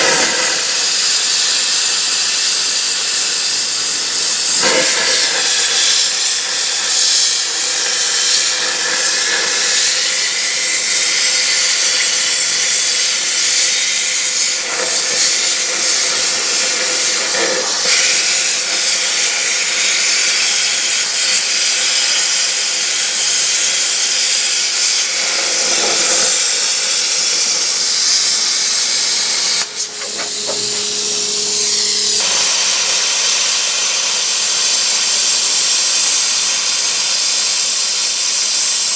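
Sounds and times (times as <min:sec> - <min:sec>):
plasma cutter arc hissing: 0:00.0 - 0:38.9.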